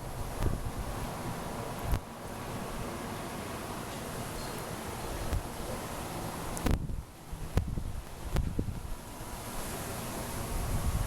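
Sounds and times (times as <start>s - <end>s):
wind buffeting microphone: 0.0s - 2.1s, 5.0s - 11.0s.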